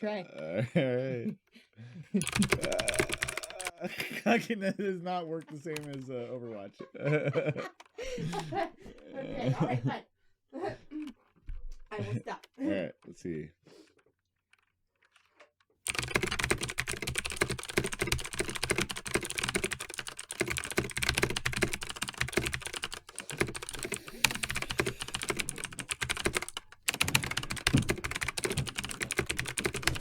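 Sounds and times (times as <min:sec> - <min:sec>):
fast typing on keyboard: 0:02.2 - 0:03.8, 0:05.7 - 0:06.0, 0:15.9 - 0:30.0.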